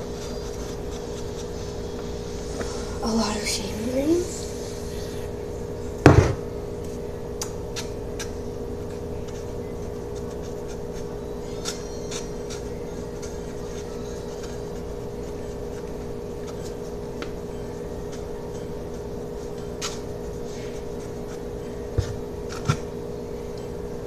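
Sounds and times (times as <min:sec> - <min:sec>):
steady low hum: 0:00.0 - 0:24.0
sharp knock: 0:06.1 - 0:06.4.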